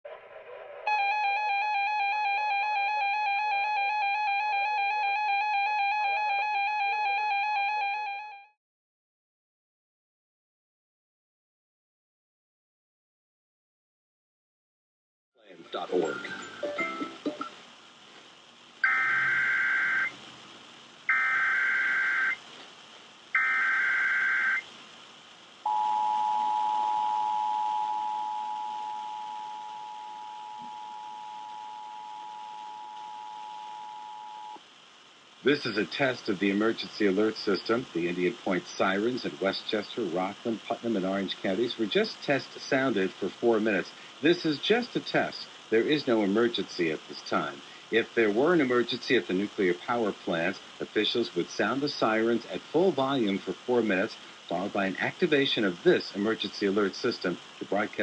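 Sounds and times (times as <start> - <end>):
data tone bursts: 0.9 - 8.2, 18.8 - 20.2, 21.1 - 22.4, 23.4 - 24.6, 25.7 - 34.6
harsh two-tone alert: 0.9 - 8.2, 18.8 - 20.1
two-tone attention signal: 0.9 - 8.5, 18.8 - 20.1, 25.7 - 34.6
quiet program audio: 15.4 - 58.0.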